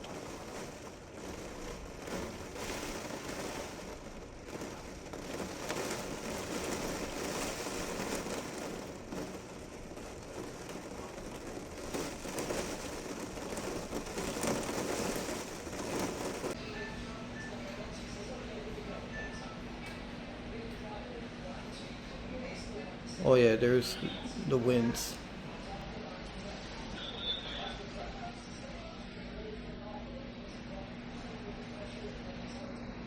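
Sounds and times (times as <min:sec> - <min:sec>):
heavy rain falling: 0:00.0 - 0:16.6.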